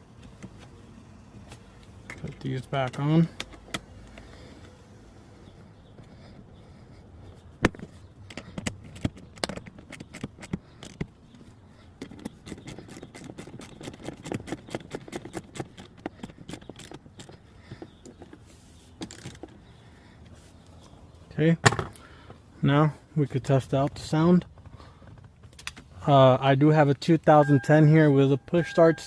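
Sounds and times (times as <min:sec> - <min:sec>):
bolts clicking and tapping: 0:00.1 - 0:00.8, 0:01.5 - 0:04.8, 0:05.4 - 0:21.0, 0:23.8 - 0:25.9.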